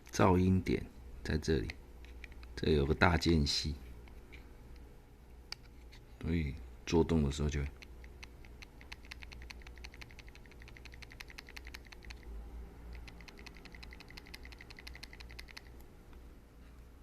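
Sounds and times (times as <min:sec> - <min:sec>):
actuator clicking rapidly: 0:07.7 - 0:15.8.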